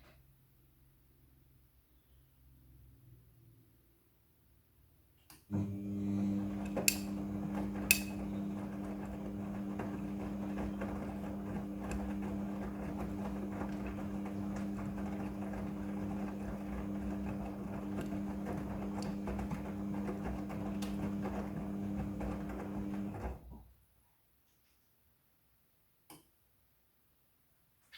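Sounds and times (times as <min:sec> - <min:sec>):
washing machine motor hum: 0:05.5 - 0:23.7.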